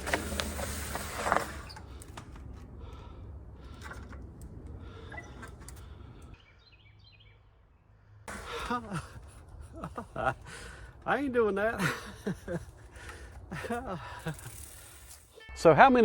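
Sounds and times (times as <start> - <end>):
bike clicks and knocks: 0.0 - 6.4
bike tyres on dirt trail: 0.0 - 7.4, 8.3 - 11.1, 11.7 - 15.7.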